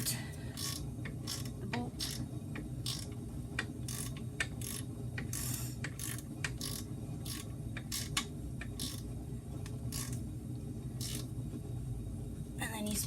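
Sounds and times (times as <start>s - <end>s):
ratchet wrench clicking: 0.0s - 2.2s, 2.8s - 3.1s, 3.9s - 8.2s, 8.8s - 9.0s, 9.9s - 10.2s, 11.0s - 11.3s
steady low hum: 0.0s - 13.0s.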